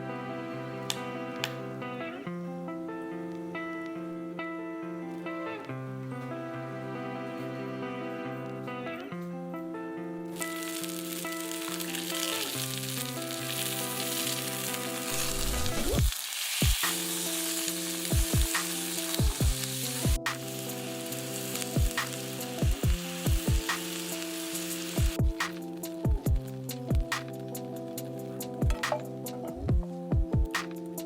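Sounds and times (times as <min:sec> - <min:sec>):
background music: 0:00.0 - 0:31.0
food sizzling in a pan: 0:10.3 - 0:29.7.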